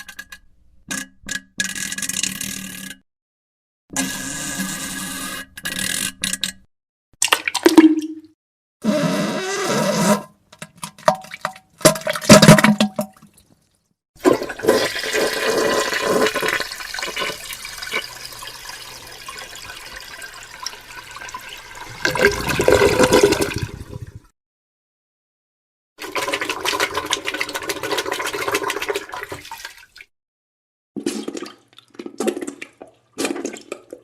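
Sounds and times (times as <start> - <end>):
toilet flushing: 14.2 - 24.3, 26.0 - 29.8
fart sounds: 14.6 - 16.6.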